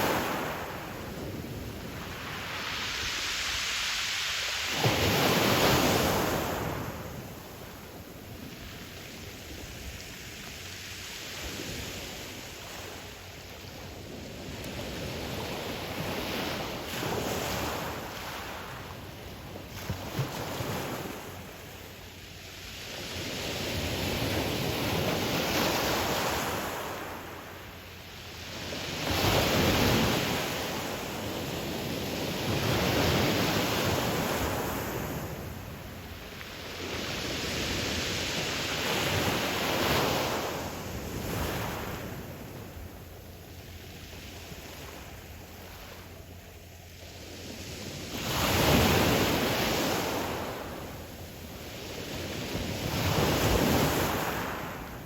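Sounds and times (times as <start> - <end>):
surf breaking on pebble beach: 0.0 - 8.5.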